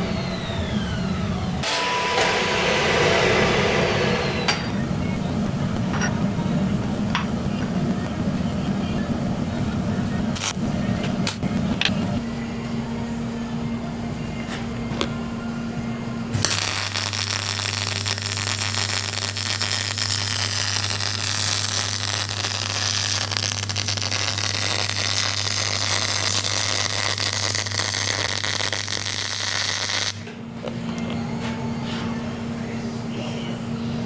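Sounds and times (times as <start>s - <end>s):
low buzz: 0.0s - 26.2s
arc welding crackling: 3.3s - 12.2s, 16.3s - 30.3s.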